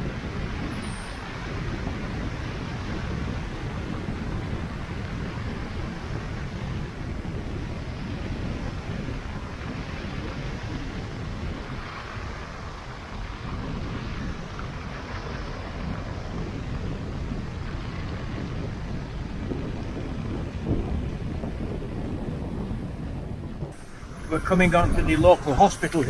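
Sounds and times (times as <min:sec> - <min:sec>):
wind buffeting microphone: 0:00.0 - 0:26.0
vehicle rumbling on the move: 0:23.5 - 0:26.0
continuous hiss: 0:23.7 - 0:26.0.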